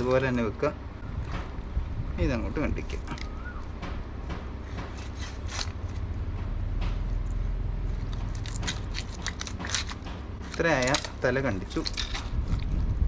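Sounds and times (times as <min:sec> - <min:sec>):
steady low rumble: 0:00.0 - 0:13.0
knife crunching through fish: 0:04.7 - 0:06.0, 0:08.0 - 0:13.0.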